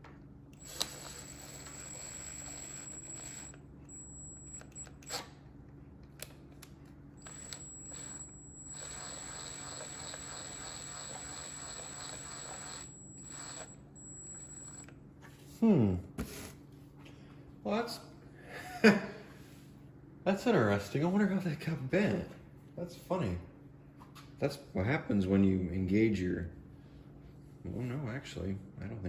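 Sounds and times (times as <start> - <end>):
steady low hum: 0.0 - 23.9
faint high whine: 0.5 - 5.2, 7.2 - 14.9.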